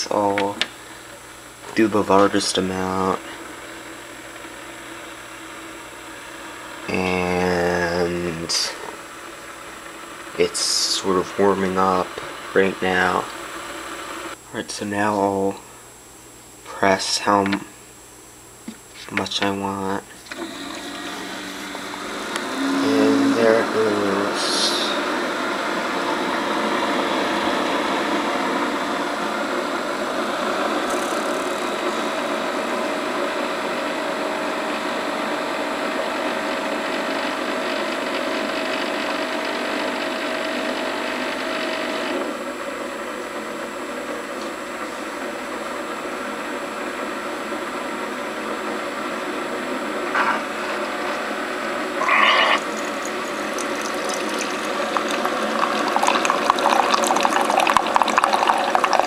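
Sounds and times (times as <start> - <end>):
coffee maker pump buzzing: 0.2 - 14.4, 20.2 - 43.6, 47.6 - 59.0
faint tone: 22.2 - 25.0.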